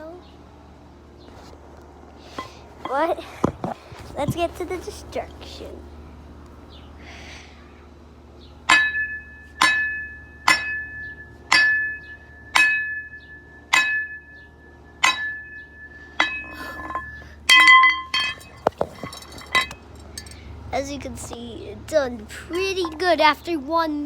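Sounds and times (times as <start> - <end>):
sharp ringing glassy strikes: 8.7 - 20.5.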